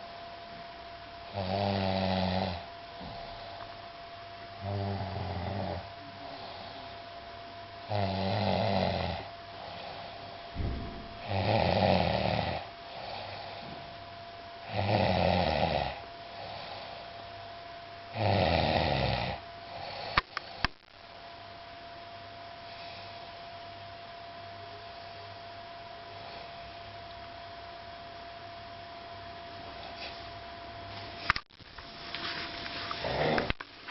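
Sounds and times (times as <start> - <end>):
faint steady hum: 0.0 - 33.9
person snoring: 1.3 - 3.6, 4.6 - 6.9, 7.9 - 10.2, 11.2 - 13.6, 14.6 - 17.0, 18.1 - 20.6, 33.0 - 33.6.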